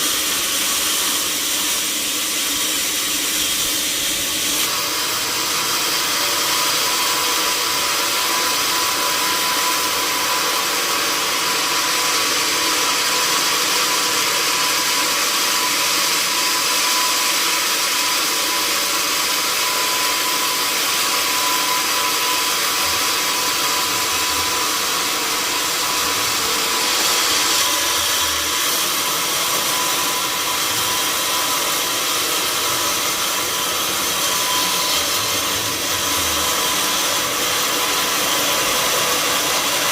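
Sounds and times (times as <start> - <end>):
sawmill saw cutting log: 0.0 - 39.9.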